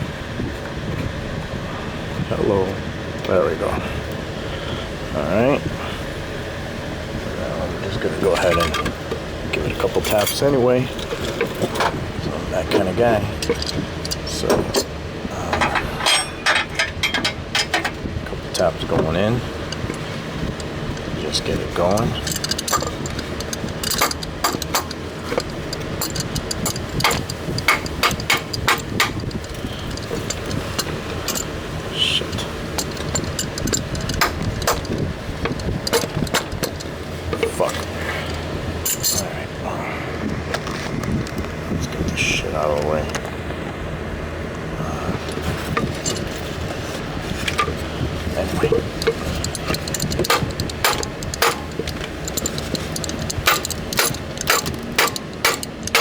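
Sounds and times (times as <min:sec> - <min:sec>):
hammer tapping metal part: 0:21.9 - 0:31.5, 0:32.8 - 0:39.2, 0:48.7 - 0:56.0.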